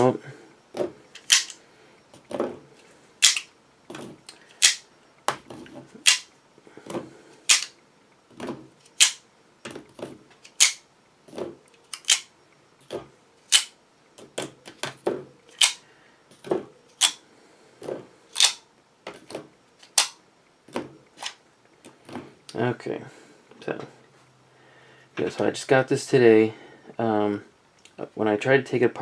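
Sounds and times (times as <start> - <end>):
cartridges clicking out of magazine: 1.2 - 1.6, 3.2 - 3.5, 4.6 - 4.8, 6.0 - 6.3, 7.5 - 7.8, 8.9 - 9.2, 10.4 - 10.8, 11.9 - 12.3, 13.5 - 13.8, 15.5 - 15.8, 17.0 - 17.2, 18.4 - 18.6.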